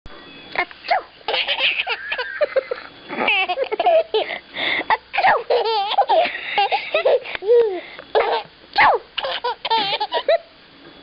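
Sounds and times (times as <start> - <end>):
baby laughing: 0.9 - 10.4.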